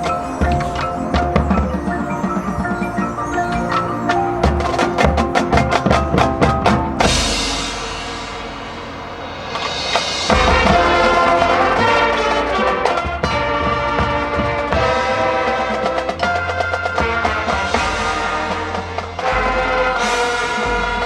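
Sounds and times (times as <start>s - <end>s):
cymbal crash ringing: 0.0s - 14.5s
marching band playing: 0.0s - 21.0s
sharp percussion strikes: 0.0s - 21.0s.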